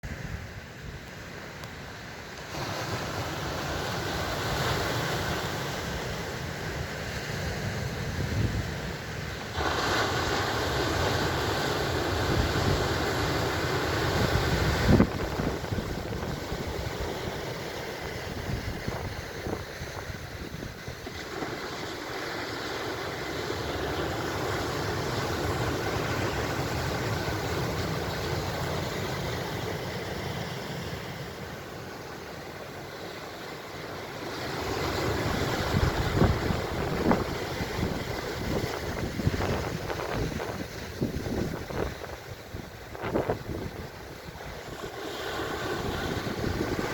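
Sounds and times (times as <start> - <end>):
ocean waves breaking: 0.0 - 46.9
wind rumbling on microphone: 2.5 - 22.4, 34.3 - 46.9.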